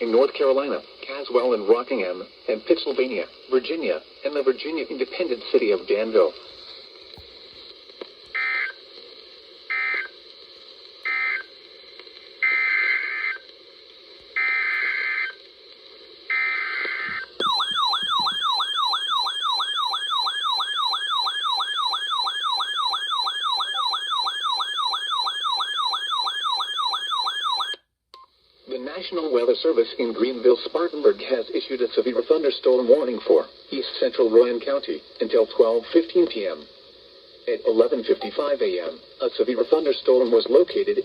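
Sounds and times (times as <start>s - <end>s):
steady background hiss: 0.0s - 19.4s, 28.0s - 41.0s.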